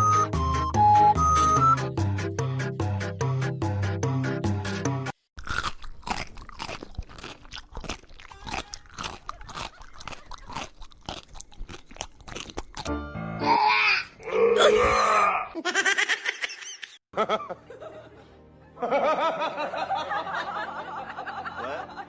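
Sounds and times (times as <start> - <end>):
music: 0.0 - 5.2, 12.9 - 13.6, 17.2 - 22.0
crunchy food being chewed: 5.4 - 13.0.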